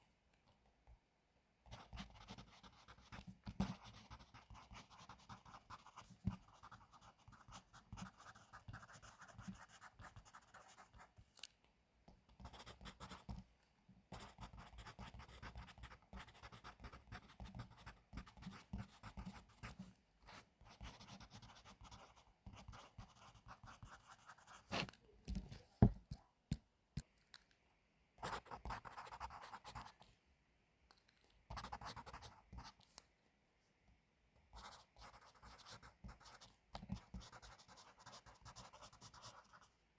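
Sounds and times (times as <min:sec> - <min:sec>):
pencil scratching on paper: 0:01.7 - 0:11.2, 0:12.4 - 0:13.4, 0:14.1 - 0:25.0, 0:28.2 - 0:29.9, 0:31.5 - 0:32.7, 0:34.6 - 0:39.7.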